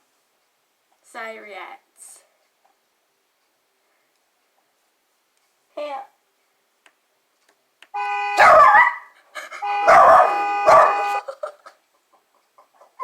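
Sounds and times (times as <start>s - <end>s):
car horn honks: 8.0s - 8.8s, 9.6s - 11.3s
dog barking: 8.4s - 9.1s, 9.8s - 11.2s.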